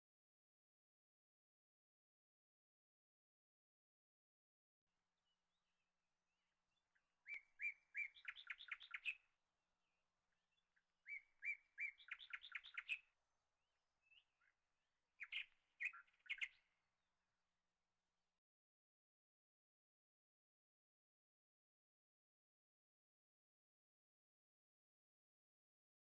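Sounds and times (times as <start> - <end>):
songbird singing: 5.2 - 13.2, 14.0 - 16.8.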